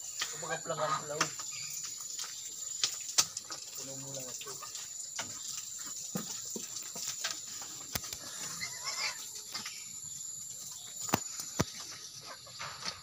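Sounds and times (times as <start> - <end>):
steady hiss: 0.0 - 13.0
faint animal calls: 8.1 - 9.6.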